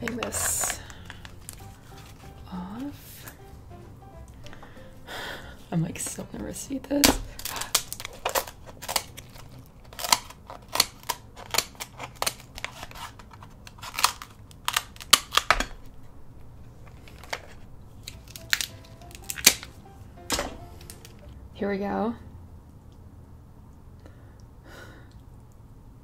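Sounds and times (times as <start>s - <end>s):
crab shell cracking: 0.0s - 2.4s, 7.0s - 16.0s, 16.8s - 19.9s.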